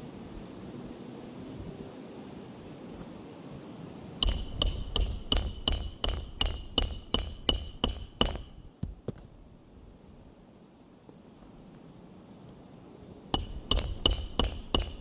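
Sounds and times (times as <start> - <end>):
hammer striking ringing blows: 4.2 - 8.7, 13.4 - 15.0.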